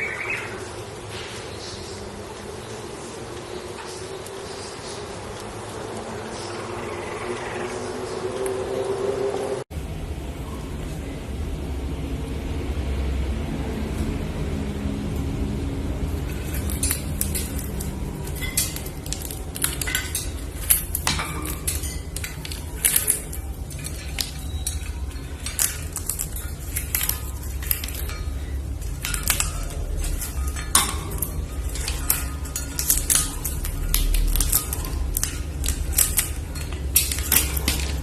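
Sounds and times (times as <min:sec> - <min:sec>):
low rumble: 0:09.7 - 0:38.0
small hard objects clinking: 0:16.0 - 0:38.0.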